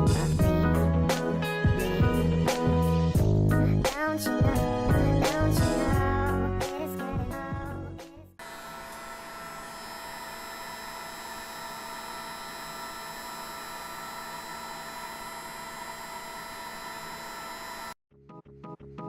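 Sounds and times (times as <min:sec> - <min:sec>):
heat gun blowing: 0:08.4 - 0:18.0
whine of fixed tones: 0:08.4 - 0:18.0.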